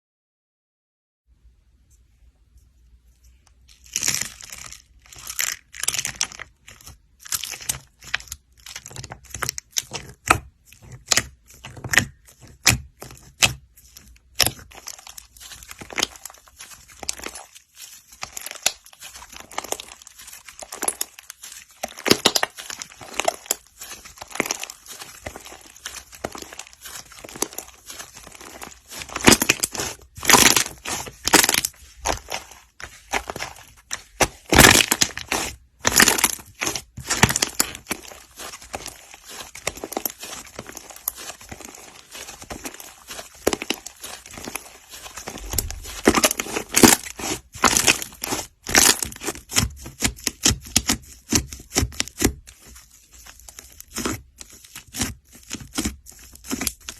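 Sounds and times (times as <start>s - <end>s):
slime squeezed by hand crackling: 14.3s - 52.3s.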